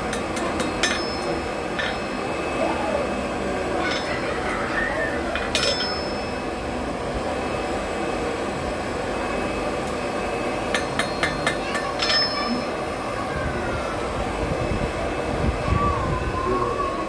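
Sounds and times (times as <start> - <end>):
hammer ringing on anvil: 0.1 - 2.2, 3.8 - 4.5, 5.4 - 6.5, 10.7 - 12.7.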